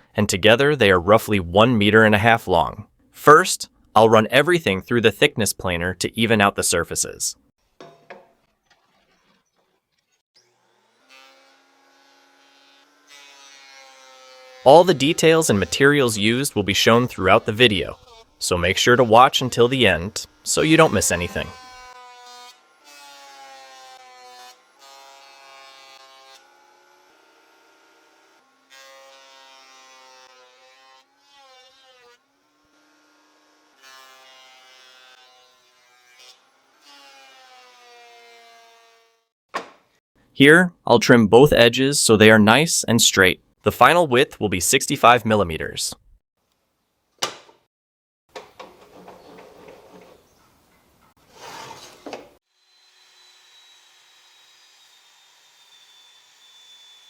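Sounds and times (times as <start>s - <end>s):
electric planer whining: 10.4s - 15.7s, 20.1s - 31.0s, 52.5s - 57.0s
power saw cutting wood: 10.4s - 39.3s, 51.2s - 57.0s.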